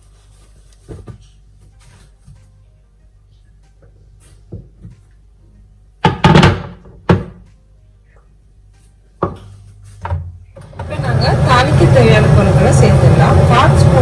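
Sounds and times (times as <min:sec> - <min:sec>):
thuds and knocks in kitchen: 0:00.8 - 0:01.3, 0:04.4 - 0:05.0, 0:06.0 - 0:07.5, 0:09.2 - 0:10.9.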